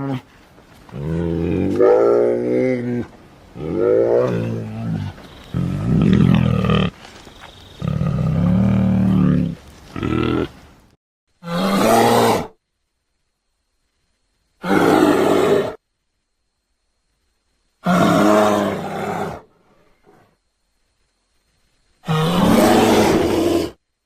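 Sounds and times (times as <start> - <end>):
bear growling and roaring: 0.0 - 7.0, 7.8 - 10.6, 11.4 - 12.6, 17.8 - 20.2, 22.0 - 23.8.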